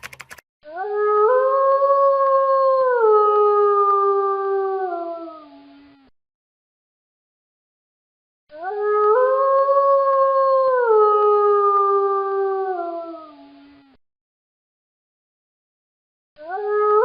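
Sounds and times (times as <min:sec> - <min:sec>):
wolf howling: 0:00.7 - 0:05.6, 0:08.6 - 0:13.6, 0:16.4 - 0:17.0.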